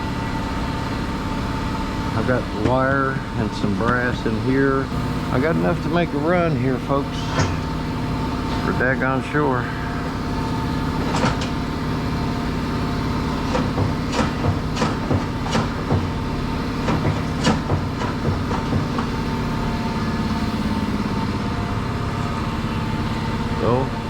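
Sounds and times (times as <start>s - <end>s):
vehicle engine running: 0.0s - 24.0s
knocks and rattles: 2.3s - 8.9s, 10.0s - 19.6s.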